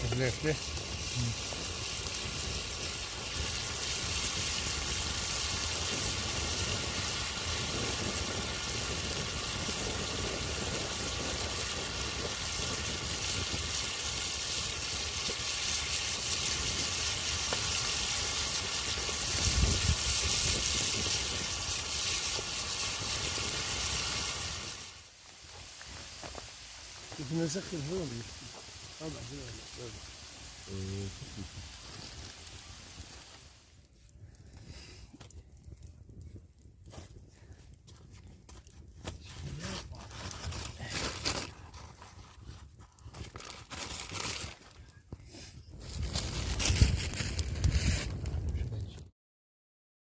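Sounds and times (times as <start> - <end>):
food sizzling in hot oil: 0.0 - 33.8, 46.0 - 48.4.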